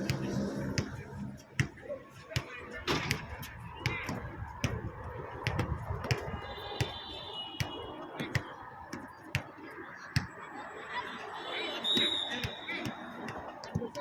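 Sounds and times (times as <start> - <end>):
murmur of voices: 0.0 - 5.5, 8.1 - 14.0
basketballs bouncing on court: 1.6 - 10.4, 11.9 - 14.0.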